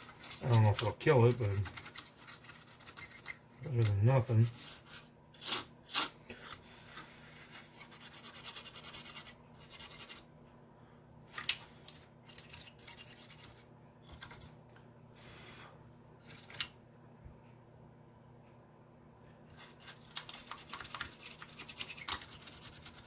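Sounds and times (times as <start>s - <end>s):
brush scrubbing circuit board: 0.0s - 6.1s, 6.7s - 10.2s, 19.5s - 23.0s.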